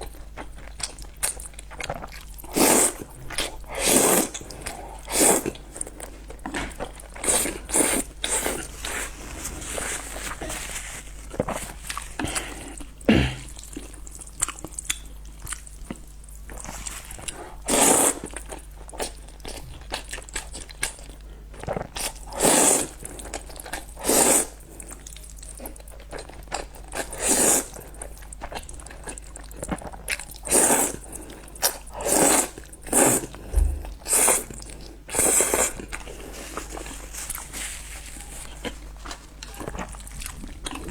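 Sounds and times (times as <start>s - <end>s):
wet chewing: 11.2s - 40.9s.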